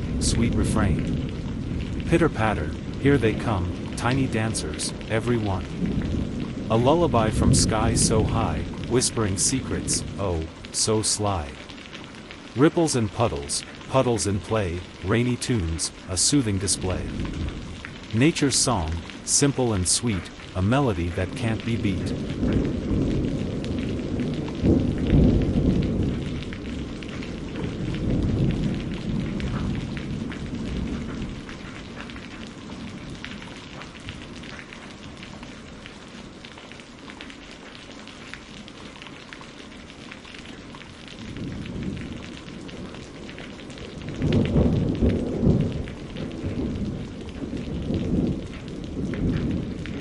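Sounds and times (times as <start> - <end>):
rolling thunder: 0.0 - 11.7, 16.7 - 18.1, 20.3 - 35.8, 41.2 - 50.0
steady rain: 0.0 - 50.0.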